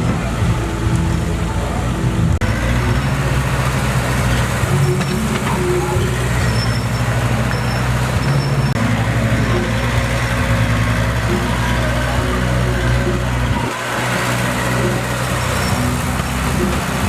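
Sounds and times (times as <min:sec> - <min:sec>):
heavy machinery diesel engine running: 0:00.0 - 0:17.0.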